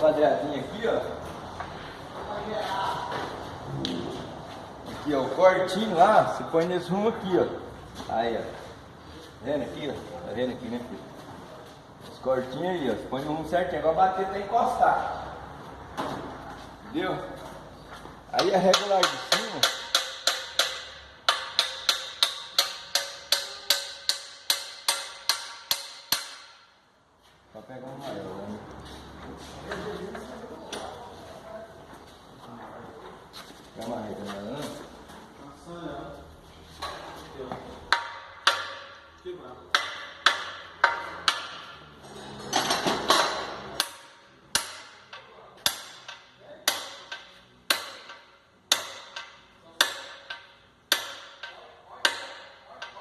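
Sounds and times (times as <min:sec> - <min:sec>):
hammer striking metal: 0:18.4 - 0:26.8, 0:37.9 - 0:41.9, 0:42.5 - 0:53.0.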